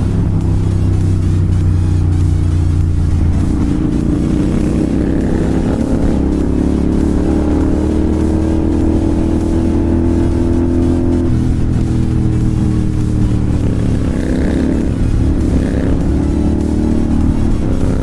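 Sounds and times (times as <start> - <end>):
motorcycle engine accelerating: 0.0 - 18.0.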